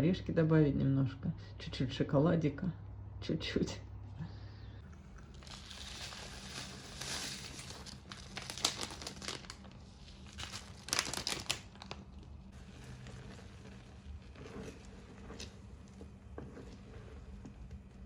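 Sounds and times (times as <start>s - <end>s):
food packaging crinkling: 5.2s - 15.5s.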